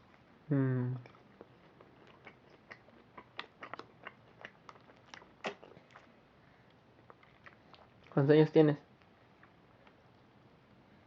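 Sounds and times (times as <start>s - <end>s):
child chewing and crunching: 0.0s - 8.3s
wet mouth clicks: 1.0s - 6.1s.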